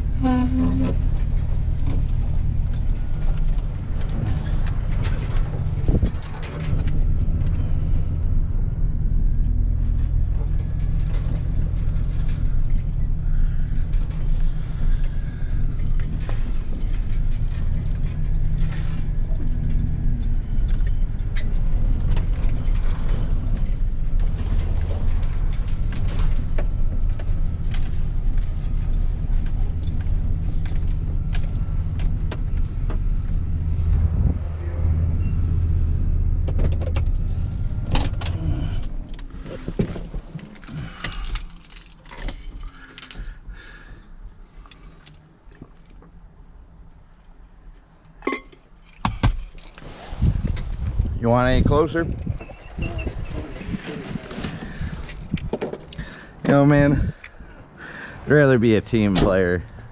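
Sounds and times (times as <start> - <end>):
engine running: 0.0 - 46.1
light clicks and rattles: 9.3 - 33.7, 36.3 - 43.9, 50.5 - 57.4.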